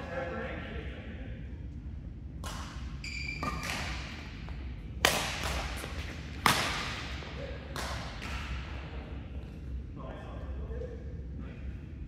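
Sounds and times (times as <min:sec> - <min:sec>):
shoe squeak on court floor: 0:03.0 - 0:03.7
racket hitting shuttlecock: 0:05.0 - 0:08.7.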